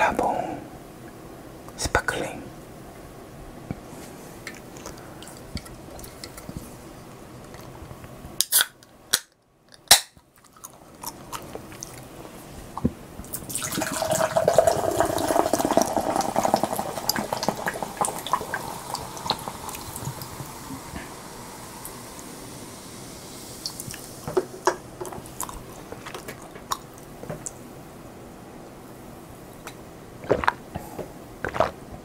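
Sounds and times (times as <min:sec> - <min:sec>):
drink fizzing with crackling bubbles: 0:04.5 - 0:07.8, 0:13.2 - 0:27.6, 0:30.2 - 0:32.0.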